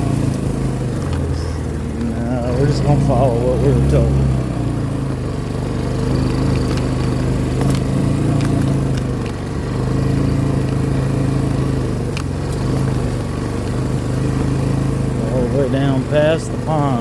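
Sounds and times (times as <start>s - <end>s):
small vehicle engine running: 0.0s - 17.0s
sharp clicks and knocks: 0.2s - 2.2s, 6.0s - 9.5s, 11.5s - 13.9s.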